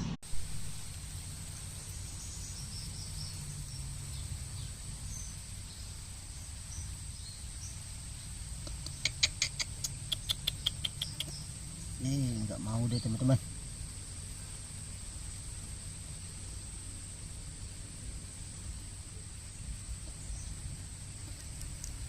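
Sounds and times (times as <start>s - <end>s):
high insect-like whine: 0.3s - 22.0s
faint bird chirps: 1.5s - 13.4s
rapid sharp chirps: 7.7s - 13.4s.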